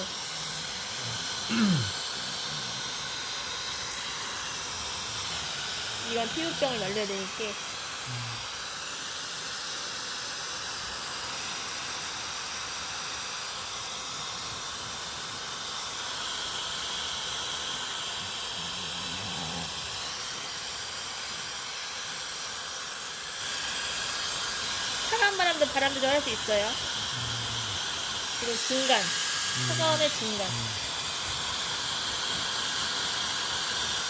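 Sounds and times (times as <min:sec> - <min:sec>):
hair dryer blowing: 0:00.0 - 0:34.0.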